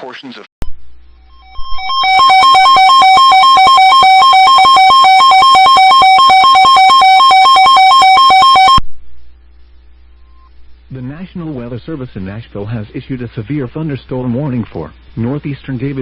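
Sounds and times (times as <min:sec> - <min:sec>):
alternating electronic alert tone: 0:01.2 - 0:08.8.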